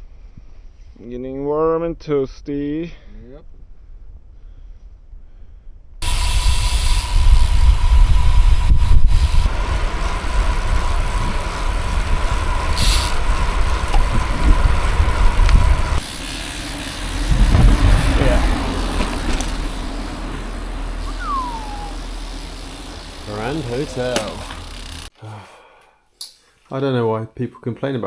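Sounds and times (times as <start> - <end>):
wind rushing over microphone: 6.0 - 16.1, 17.0 - 22.0
bicycle road noise: 6.0 - 25.2.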